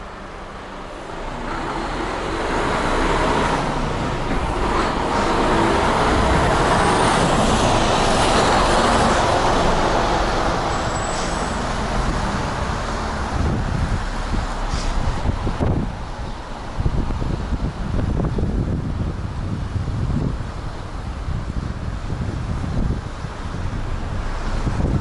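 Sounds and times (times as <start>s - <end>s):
vehicle passing close by: 1.2s - 18.2s
wind on microphone: 2.1s - 25.0s.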